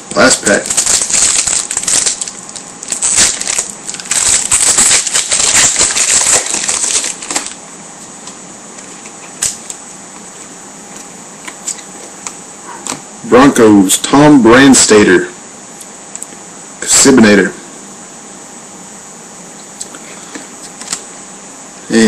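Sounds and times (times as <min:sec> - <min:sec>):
card pack wrapper crinkling: 0:00.3 - 0:07.6.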